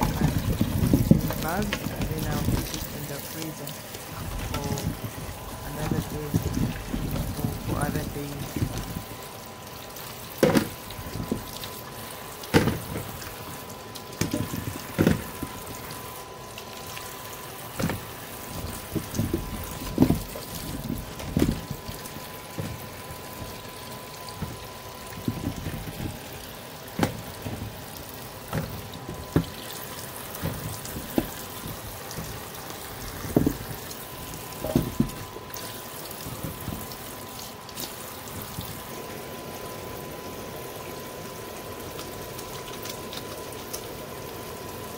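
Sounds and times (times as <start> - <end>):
water splashing and sloshing: 0.0 - 44.9
knocks in water: 10.4 - 11.6, 12.5 - 13.4, 14.2 - 16.0, 17.8 - 35.4, 36.2 - 37.0.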